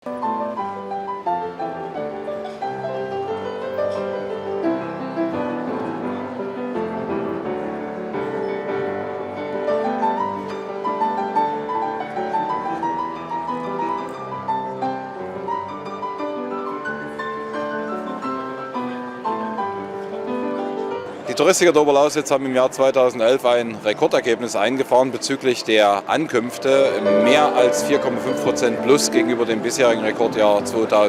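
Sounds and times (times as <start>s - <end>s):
piano background music: 0.0s - 31.0s.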